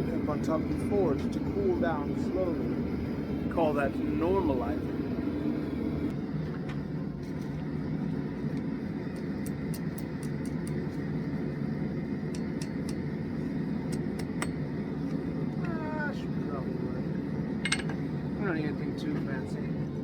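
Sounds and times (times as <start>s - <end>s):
forge low rush: 0.0s - 6.1s.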